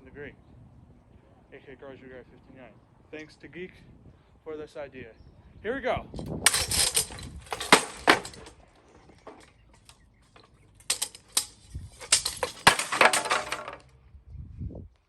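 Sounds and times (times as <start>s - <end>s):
plastic and metal cracking apart: 6.4s - 9.9s, 10.9s - 13.8s.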